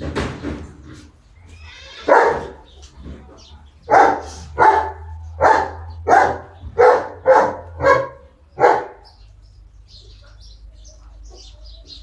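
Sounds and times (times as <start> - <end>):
dog barking: 2.0 - 2.6, 3.9 - 9.1.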